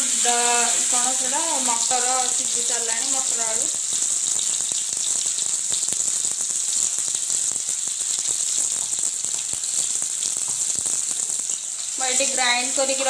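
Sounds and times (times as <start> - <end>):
hot oil sizzling: 0.0 - 13.0
small crackling pops: 1.6 - 12.0.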